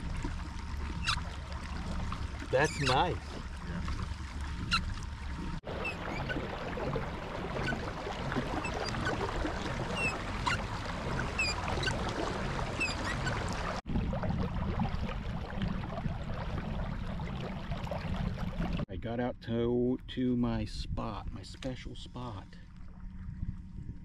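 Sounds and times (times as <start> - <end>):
water and hull noise: 0.0 - 19.0, 19.6 - 24.0
low rumble: 20.2 - 24.0.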